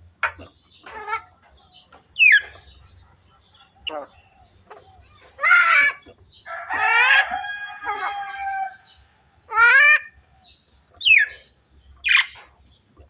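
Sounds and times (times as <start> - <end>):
bird making speech-like calls: 3.8 - 8.7.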